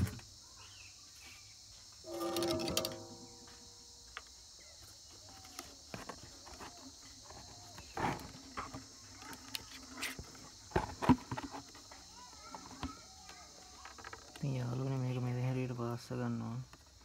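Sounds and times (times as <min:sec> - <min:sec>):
faint chirps: 0:00.0 - 0:09.8.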